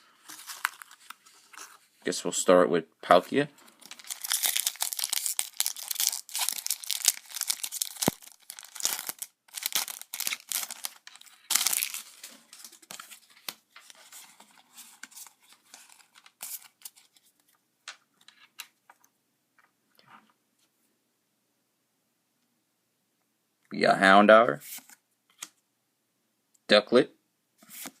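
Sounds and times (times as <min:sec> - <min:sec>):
foil wrapper tearing and crinkling: 0:03.7 - 0:13.0.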